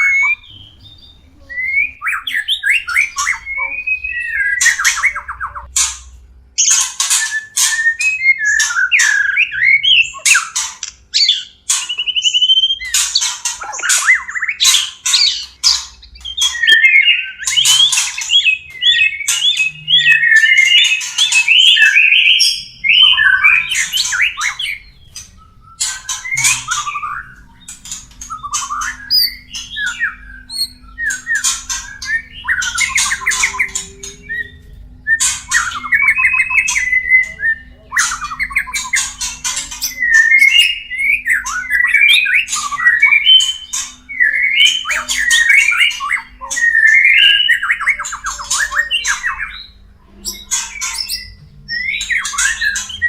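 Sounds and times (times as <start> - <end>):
birds whistling and warbling: 0.0 - 53.0
low steady hum: 22.5 - 45.3.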